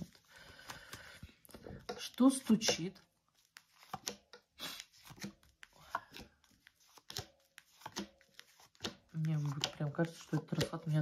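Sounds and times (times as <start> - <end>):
cards snapping and tapping: 3.6 - 11.0.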